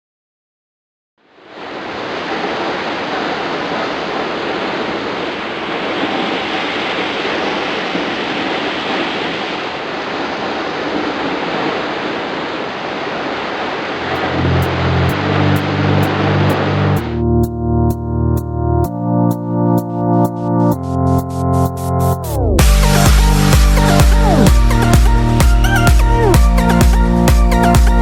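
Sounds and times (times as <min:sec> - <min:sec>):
waterfall roaring: 0:01.2 - 0:17.2.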